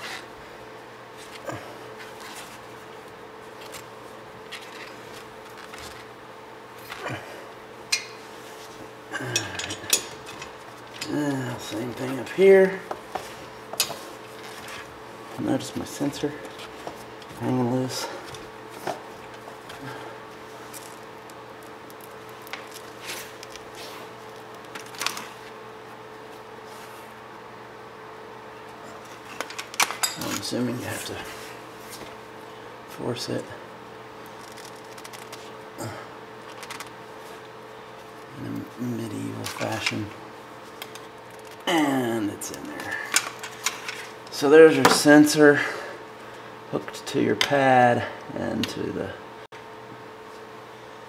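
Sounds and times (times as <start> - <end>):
faint steady hum: 0.0 - 51.0
metal brake parts clinking: 29.8 - 30.3.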